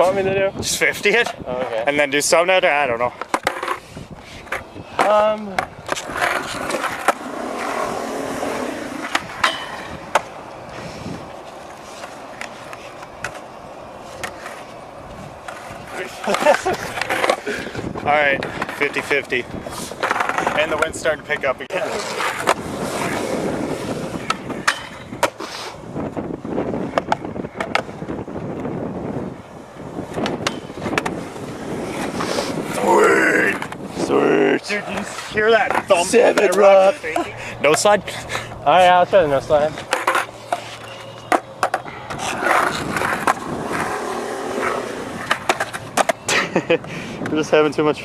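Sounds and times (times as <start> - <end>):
wind on microphone: 0.0 - 1.9, 3.8 - 11.4, 15.0 - 36.0, 41.9 - 48.0
skateboard wheels rolling on concrete: 0.0 - 48.0
skateboard clacks: 15.4 - 25.5, 26.8 - 28.7, 30.0 - 32.2, 39.7 - 47.4.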